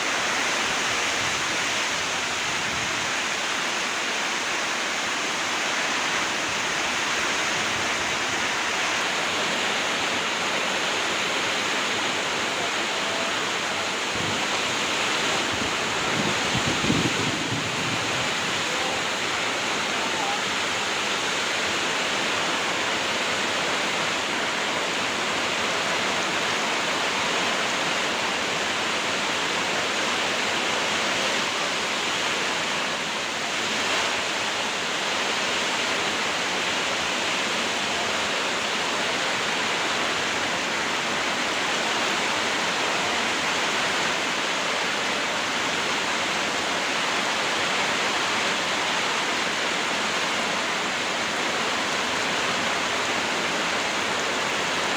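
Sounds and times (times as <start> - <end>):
heavy rain pouring: 0.0 - 54.9.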